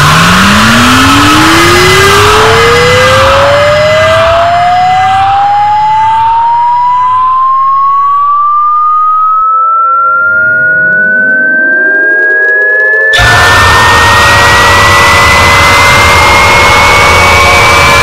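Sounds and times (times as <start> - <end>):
harsh noisy mix: 0.0 - 9.1, 13.2 - 18.0
rising tone: 0.0 - 18.0
steady lower tones: 0.0 - 18.0.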